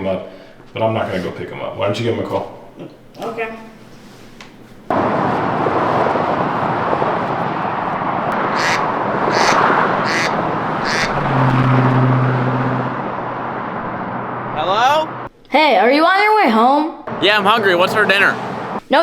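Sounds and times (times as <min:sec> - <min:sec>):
passing traffic: 0:04.9 - 0:15.4, 0:17.1 - 0:18.9.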